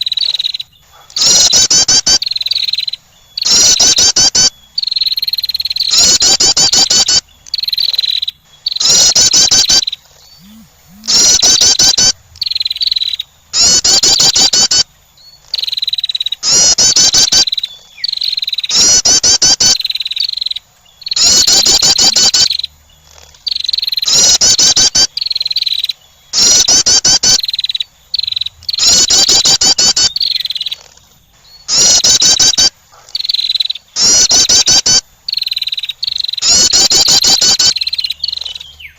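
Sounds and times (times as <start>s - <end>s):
wren rapid chip notes: 10.4s - 12.2s, 21.2s - 22.5s.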